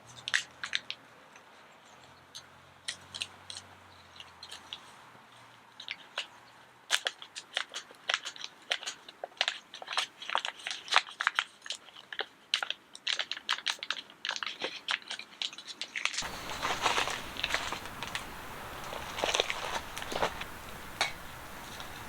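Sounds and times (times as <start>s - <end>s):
crunching and crackling: 7.0s - 22.0s
steady hiss: 16.2s - 22.0s.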